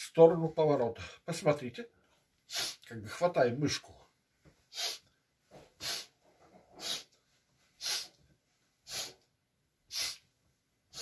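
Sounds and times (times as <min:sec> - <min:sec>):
sharp nose sniffs: 0:02.5 - 0:02.8, 0:04.7 - 0:05.1, 0:05.8 - 0:06.2, 0:06.8 - 0:07.1, 0:07.8 - 0:08.2, 0:08.8 - 0:09.2, 0:09.9 - 0:10.2.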